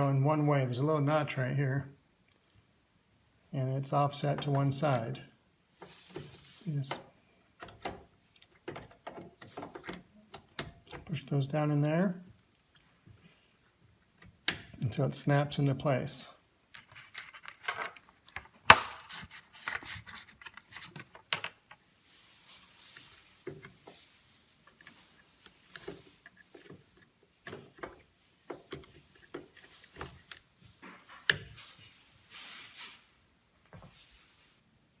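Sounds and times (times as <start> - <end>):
plastic clicks and knocks: 6.2 - 11.1
slot latches snapping shut: 14.2 - 14.8.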